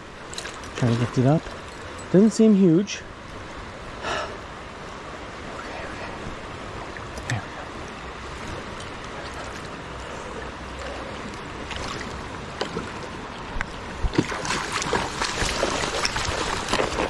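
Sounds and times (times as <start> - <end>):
river water rushing: 0.0 - 17.0
fish splashing in shallows: 8.5 - 13.0, 14.0 - 17.0.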